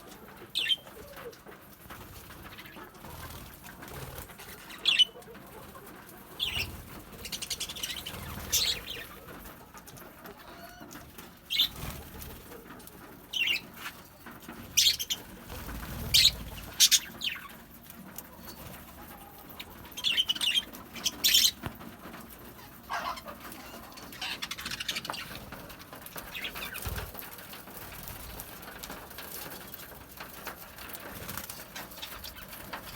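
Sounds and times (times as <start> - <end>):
birds chirping shrilly: 0.5 - 0.9, 4.7 - 5.2, 6.4 - 9.2, 11.5 - 12.0, 14.8 - 17.6, 19.9 - 21.6, 22.8 - 25.6
wing flutters: 11.1 - 17.7.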